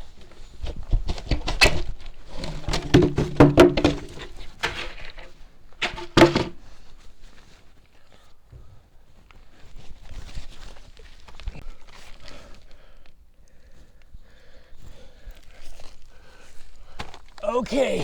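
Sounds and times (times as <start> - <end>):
knocks and thumps of handling: 0.6 - 6.7.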